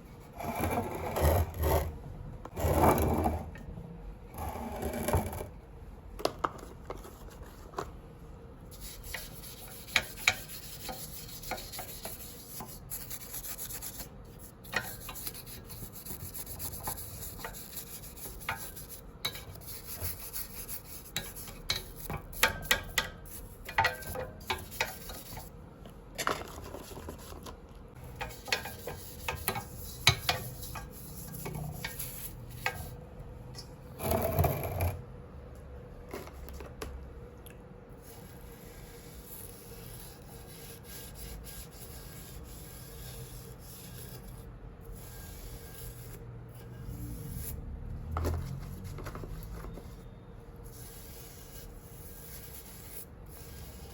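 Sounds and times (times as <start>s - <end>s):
hand scrubbing metal: 8.8s - 25.5s, 28.1s - 32.9s.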